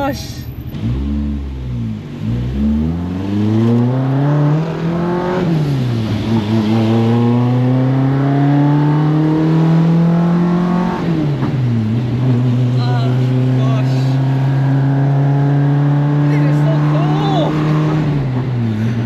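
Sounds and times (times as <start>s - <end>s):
car engine accelerating hard: 0.6s - 19.0s.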